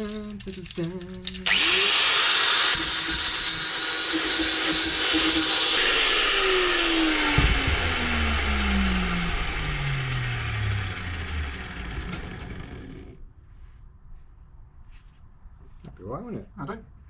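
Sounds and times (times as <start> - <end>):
power tool motor winding down: 1.2 - 13.2
knock: 7.3 - 7.9.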